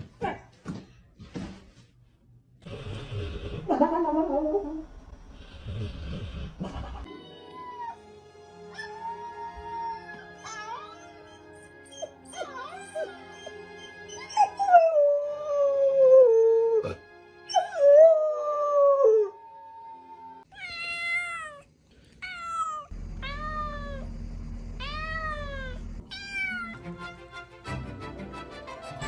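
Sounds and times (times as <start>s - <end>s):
music: 7.1s - 20.5s, 26.7s - 29.0s
steady low hum: 22.9s - 26.1s.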